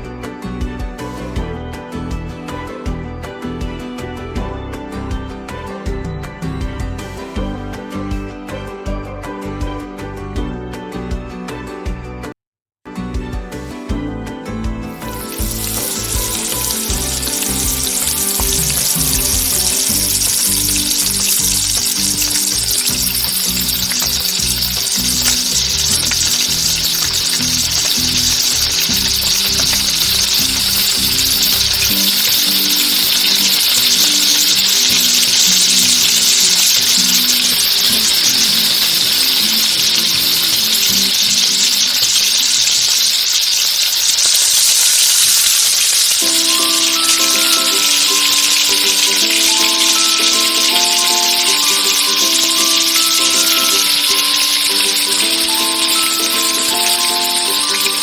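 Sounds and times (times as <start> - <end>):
background music: 0.0 - 12.3, 12.9 - 43.0, 46.0 - 58.0
chicken sizzling in a pan: 14.9 - 58.0.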